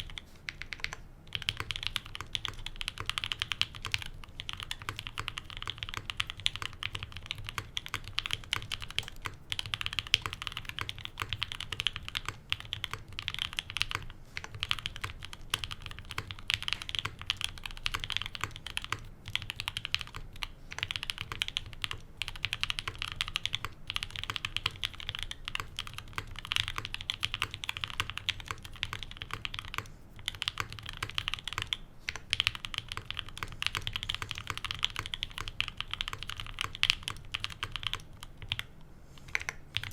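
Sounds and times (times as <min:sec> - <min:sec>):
faint fan hum: 0:00.0 - 0:39.9
mechanical keyboard typing: 0:00.0 - 0:39.9.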